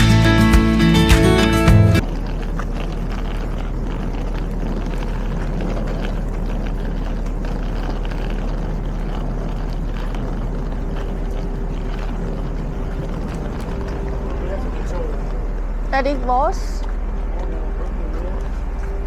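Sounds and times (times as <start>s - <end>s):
guitar music: 0.0s - 2.0s
passenger train rumbling: 0.0s - 19.0s.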